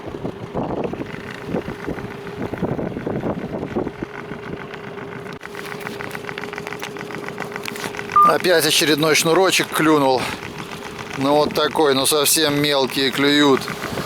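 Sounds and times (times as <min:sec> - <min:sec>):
wind buffeting microphone: 0:00.0 - 0:05.0, 0:09.4 - 0:14.0
outboard motor running: 0:00.0 - 0:14.0
waves splashing against boat: 0:05.4 - 0:14.0.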